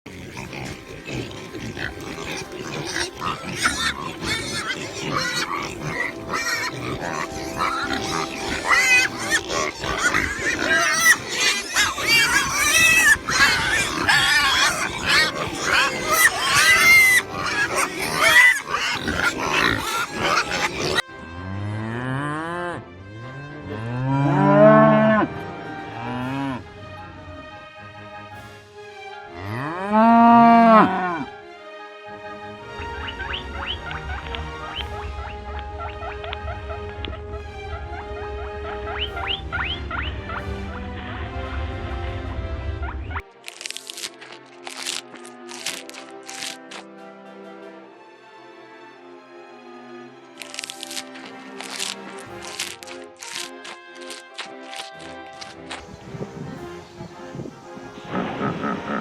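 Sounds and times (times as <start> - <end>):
farm animals calling: 0.1 - 21.0, 32.7 - 41.2, 42.8 - 46.8, 50.5 - 59.0.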